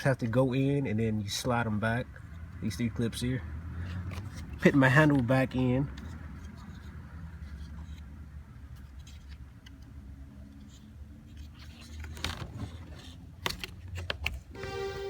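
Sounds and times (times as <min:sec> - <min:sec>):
plastic scraping and handling: 0:03.9 - 0:08.1, 0:08.7 - 0:14.6.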